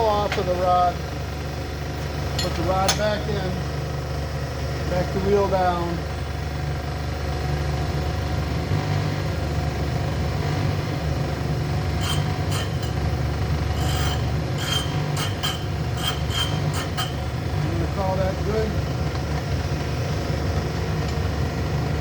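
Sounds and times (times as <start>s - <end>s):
grinder motor hum: 0.0s - 22.0s
short grinding rasps: 10.8s - 18.0s.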